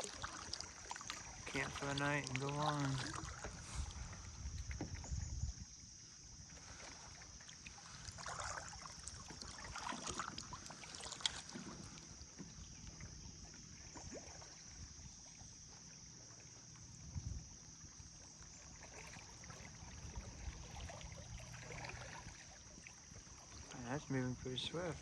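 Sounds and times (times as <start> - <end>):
water knocking against kayak hull: 0.0 - 5.6
soft water splashes: 0.0 - 25.0
wind rumble on microphone: 3.1 - 6.0, 16.9 - 17.7, 19.8 - 22.5.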